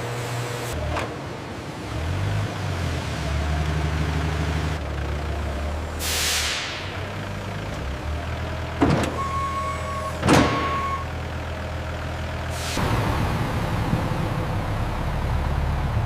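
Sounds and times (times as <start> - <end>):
factory machinery humming: 2.6 - 16.0
loud hiss: 6.0 - 7.0.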